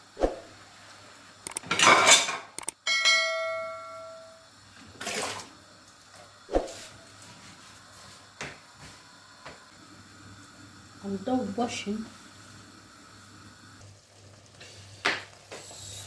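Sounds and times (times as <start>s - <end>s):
metal dish ringing: 2.1s - 4.4s.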